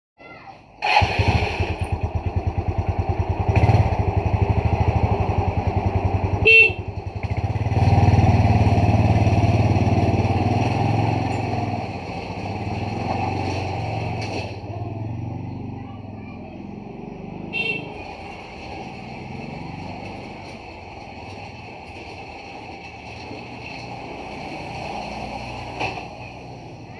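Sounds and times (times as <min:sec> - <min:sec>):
small engine idling: 0:00.8 - 0:13.0.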